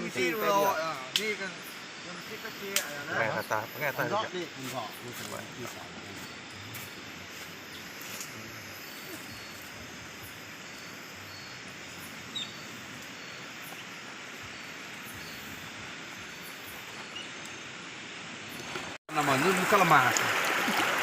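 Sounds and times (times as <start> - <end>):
stream water flowing: 4.6 - 21.0.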